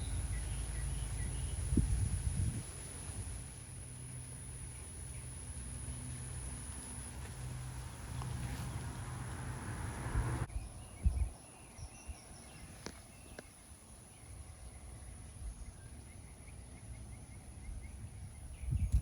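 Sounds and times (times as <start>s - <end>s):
birds chirping: 0.0s - 2.0s.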